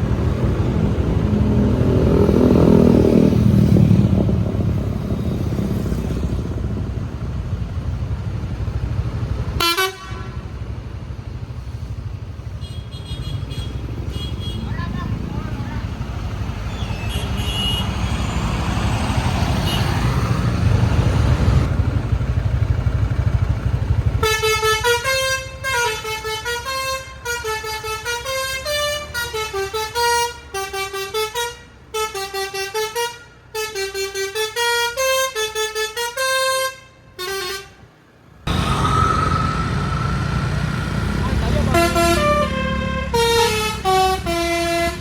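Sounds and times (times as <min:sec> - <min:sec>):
bus engine rumble: 0:00.0 - 0:36.1, 0:36.7 - 0:45.0
road noise: 0:00.0 - 0:45.0
horn playing fast melody: 0:41.0 - 0:45.0.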